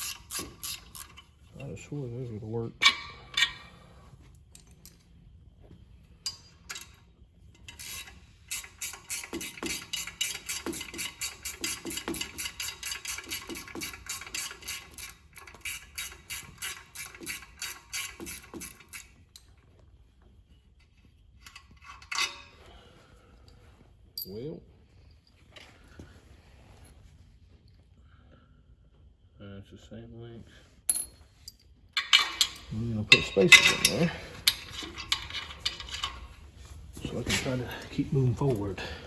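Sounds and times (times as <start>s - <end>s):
ratchet wrench clicking: 0.0s - 1.3s, 6.3s - 19.4s, 32.0s - 36.3s.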